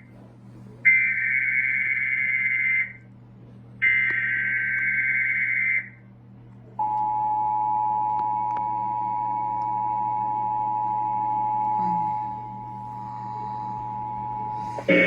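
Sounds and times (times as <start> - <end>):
electronic attention tone: 13.8 - 15.0.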